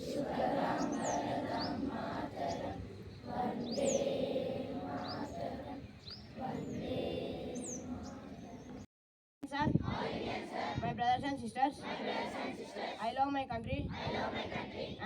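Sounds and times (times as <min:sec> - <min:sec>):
children reciting in unison: 0:00.0 - 0:08.9, 0:09.7 - 0:11.0, 0:11.6 - 0:15.0
small birds chirping: 0:00.7 - 0:08.8.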